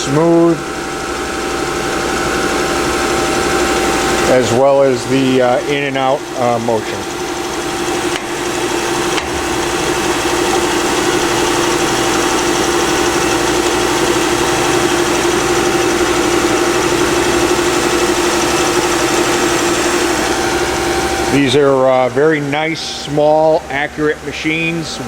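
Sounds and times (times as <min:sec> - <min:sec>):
grinder motor humming: 0:00.0 - 0:23.9.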